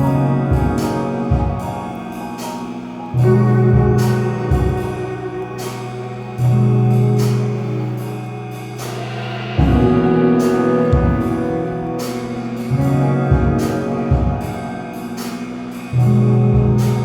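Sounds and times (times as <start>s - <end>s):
cymbal strokes: 0.0s - 17.0s
sustained chords: 0.0s - 17.0s
low drum hits: 3.3s - 5.6s, 8.9s - 14.7s.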